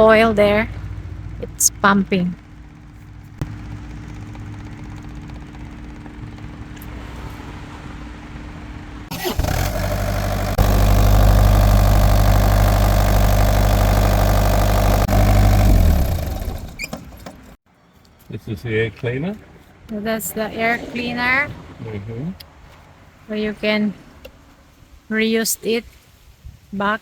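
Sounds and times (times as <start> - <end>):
engine cranking and running: 0.0 - 17.6
low hum of fuel system priming: 0.0 - 17.6.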